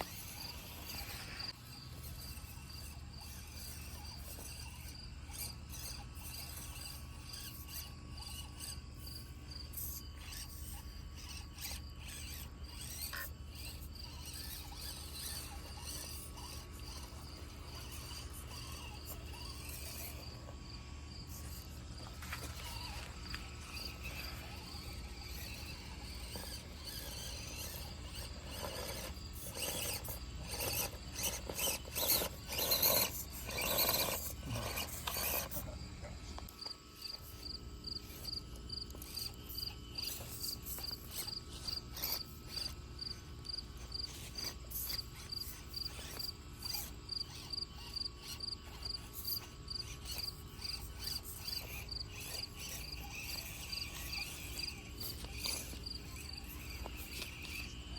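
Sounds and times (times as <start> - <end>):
cricket chirping: 0.0 - 57.9
scraping and rustling: 15.0 - 36.5.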